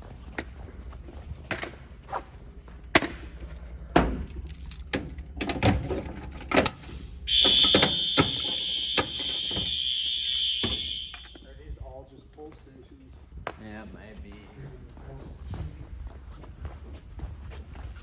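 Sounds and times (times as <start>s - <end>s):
knocks and clicks: 4.2s - 11.4s
fire alarm tone: 7.3s - 11.4s.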